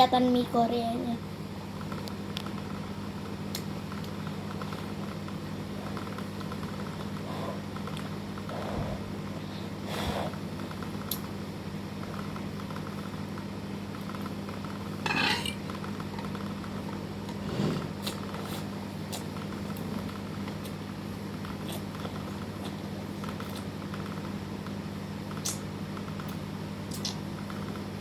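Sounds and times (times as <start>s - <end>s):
steady low hum: 0.0s - 28.0s
cutlery clinking against bowl: 15.1s - 15.6s.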